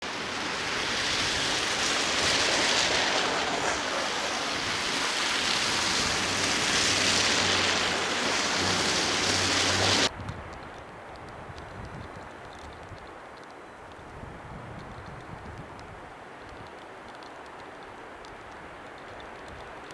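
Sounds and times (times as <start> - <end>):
tyres hissing on slushy pavement: 0.0 - 10.1
vehicle engine humming: 0.0 - 10.1.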